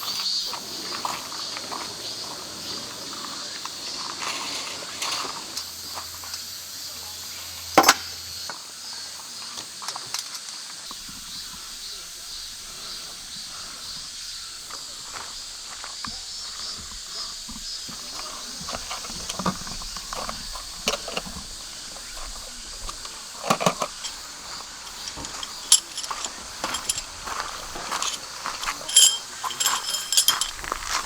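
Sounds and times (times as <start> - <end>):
high-pitched insect chorus: 0.0 - 31.0
handling knocks and clicks: 16.0 - 31.0.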